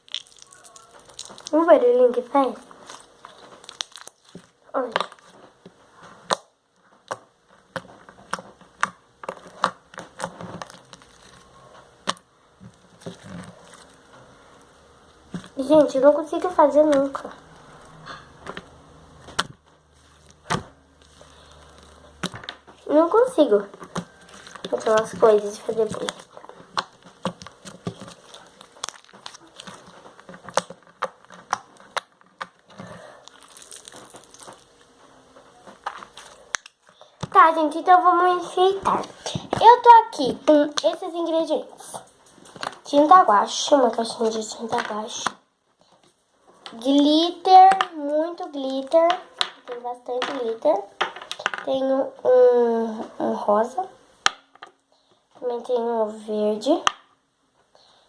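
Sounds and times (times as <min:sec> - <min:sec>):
slime squeezed by hand: 0:00.0 - 0:01.7, 0:33.2 - 0:34.7
slime squishing: 0:00.0 - 0:05.4, 0:06.0 - 0:34.9.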